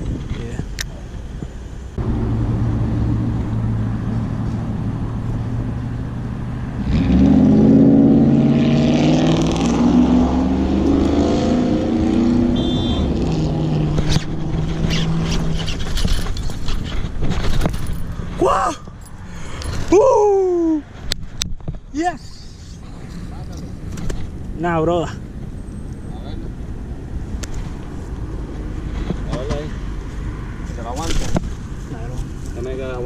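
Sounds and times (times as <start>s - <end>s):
engine running: 2.0s - 18.4s.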